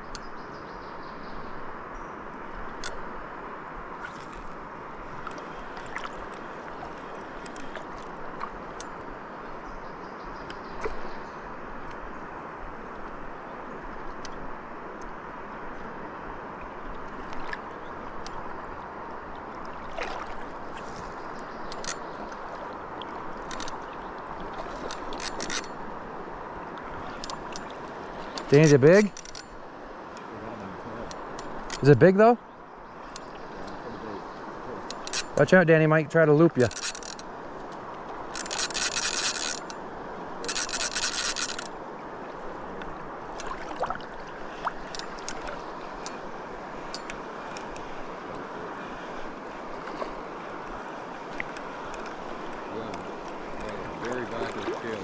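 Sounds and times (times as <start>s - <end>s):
river water rushing: 1.6s - 9.7s, 11.0s - 55.0s
light clicks: 2.7s - 3.0s, 20.8s - 23.9s, 24.8s - 25.8s, 26.8s - 30.3s, 34.8s - 35.4s, 36.6s - 39.8s, 40.4s - 41.8s, 46.9s - 48.4s.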